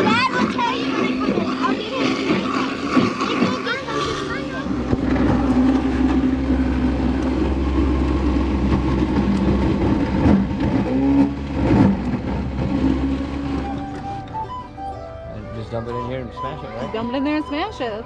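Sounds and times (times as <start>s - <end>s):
faint voices: 0.0s - 6.8s
engine running steadily: 0.0s - 18.0s.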